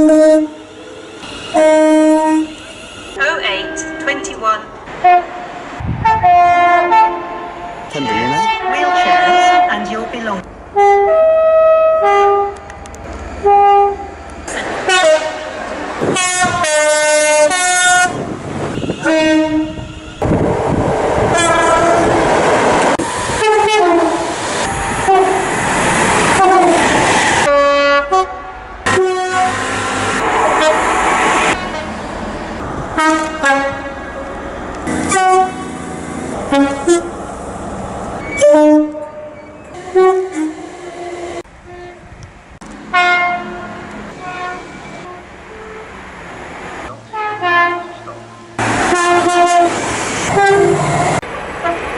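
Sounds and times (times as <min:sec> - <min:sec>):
two-tone train horn blasts: 0:00.0 - 0:12.8, 0:13.4 - 0:14.1, 0:14.8 - 0:20.5, 0:21.2 - 0:22.2, 0:23.4 - 0:25.5, 0:26.3 - 0:26.8, 0:27.4 - 0:30.9, 0:33.0 - 0:34.3, 0:34.9 - 0:37.1, 0:38.4 - 0:42.1, 0:42.9 - 0:45.9, 0:47.1 - 0:50.9, 0:51.6 - 0:51.9
passing train rumble: 0:00.0 - 0:51.9.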